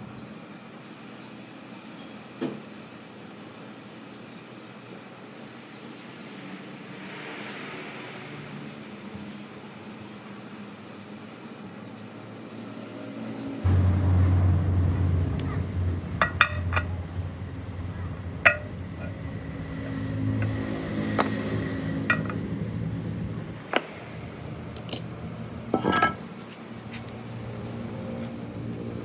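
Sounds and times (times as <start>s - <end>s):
steady low hum: 13.6s - 29.0s
sharp metallic clinks and knocks: 15.4s - 22.7s, 23.8s - 26.4s.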